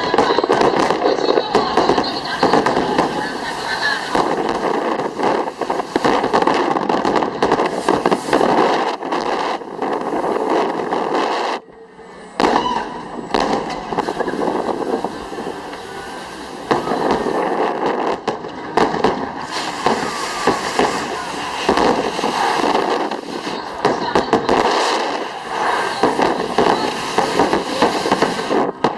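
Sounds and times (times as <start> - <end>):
fireworks bursts and crackling: 0.0 - 28.9
sharp loud firework bang: 12.4 - 15.2.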